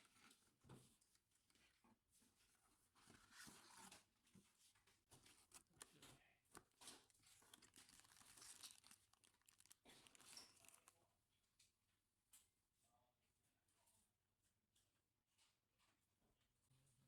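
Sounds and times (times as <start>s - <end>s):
crinkling and rustling: 0.0s - 11.0s.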